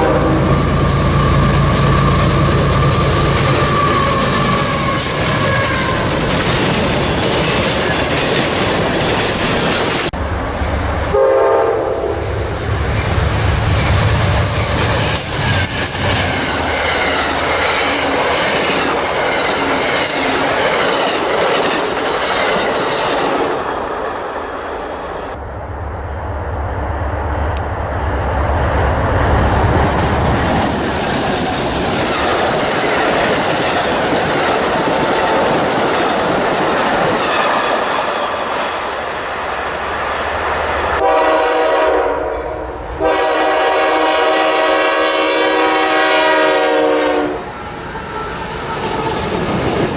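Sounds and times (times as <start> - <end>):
locomotive horn: 0.0 - 6.2, 11.0 - 12.4, 41.0 - 49.3
train wheels clattering on rails: 0.0 - 11.2, 12.4 - 24.2, 28.6 - 39.5.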